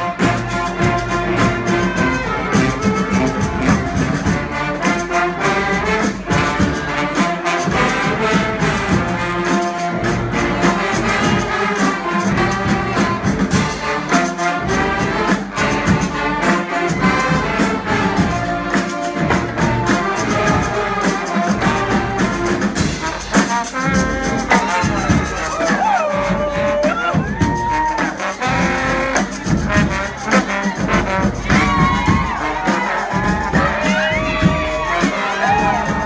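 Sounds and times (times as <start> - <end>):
brass band playing: 0.0 - 36.0.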